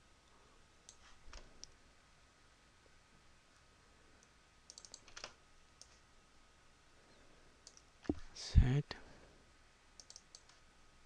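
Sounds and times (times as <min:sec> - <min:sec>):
computer mouse clicks: 0:04.2 - 0:06.0, 0:07.6 - 0:08.2, 0:10.0 - 0:10.6.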